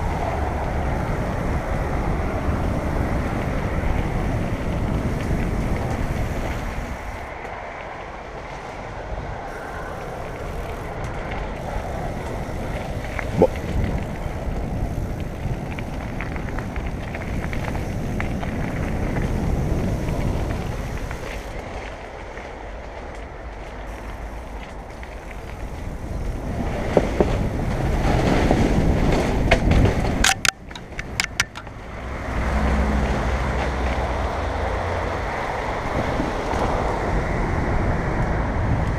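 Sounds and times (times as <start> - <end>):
bike tyres rolling on trail: 0.0 - 38.9
wind rushing on microphone: 0.0 - 38.9
sharp clattering: 29.2 - 31.8.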